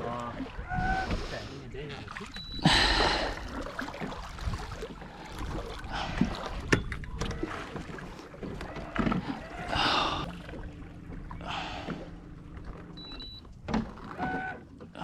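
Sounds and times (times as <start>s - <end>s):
water splashing around boat: 0.0s - 15.0s
knocks against hull: 11.8s - 15.0s.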